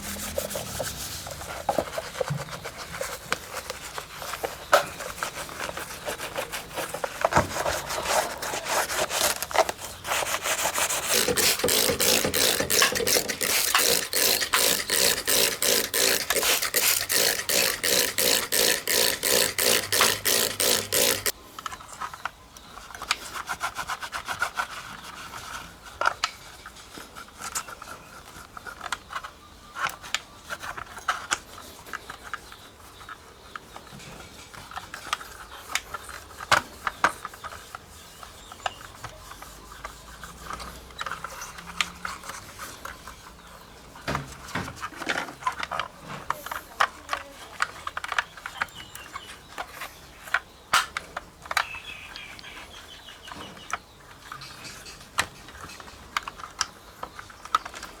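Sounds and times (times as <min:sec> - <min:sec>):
scrubbing model car: 0:00.0 - 0:21.4.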